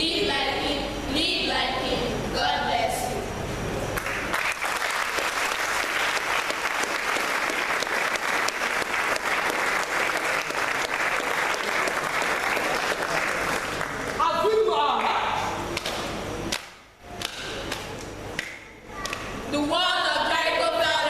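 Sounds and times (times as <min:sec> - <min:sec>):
audience applauding: 0:04.0 - 0:14.2.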